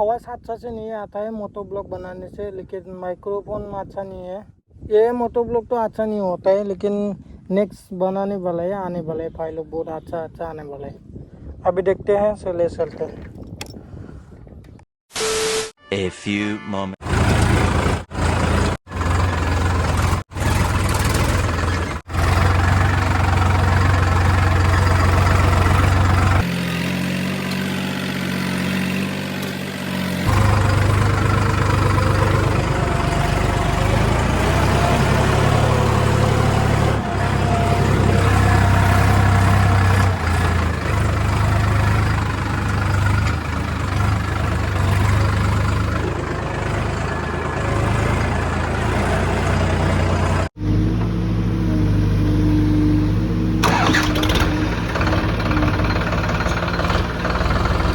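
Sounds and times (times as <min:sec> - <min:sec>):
motorcycle engine running: 0:17.0 - 0:34.3, 0:53.6 - 0:57.9.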